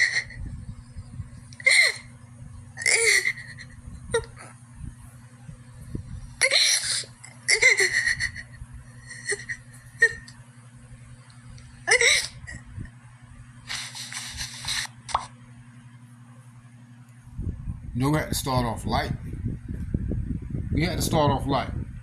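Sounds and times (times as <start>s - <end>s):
person sobbing: 0.0s - 0.4s, 1.6s - 2.1s, 2.8s - 4.6s, 6.4s - 10.4s, 11.8s - 12.7s
steady low hum: 0.0s - 22.0s.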